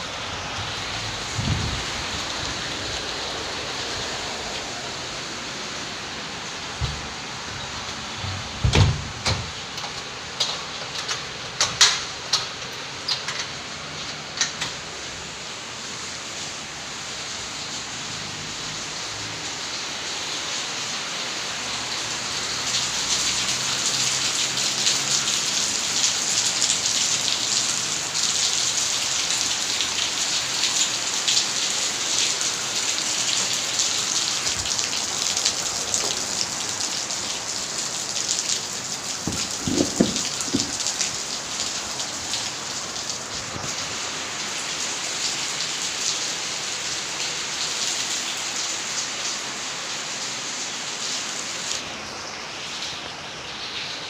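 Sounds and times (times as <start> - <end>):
steady rain falling: 0.0 - 54.0
short knocks: 6.8 - 7.3, 39.2 - 40.8.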